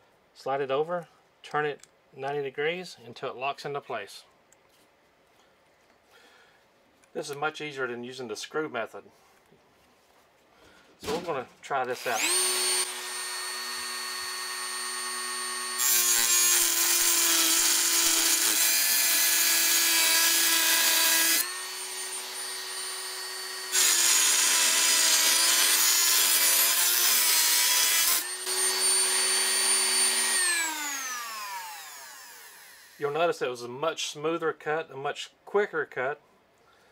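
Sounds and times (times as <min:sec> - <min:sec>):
metal cutting grinding: 0:11.9 - 0:33.0
rotary tool whine: 0:12.0 - 0:33.0.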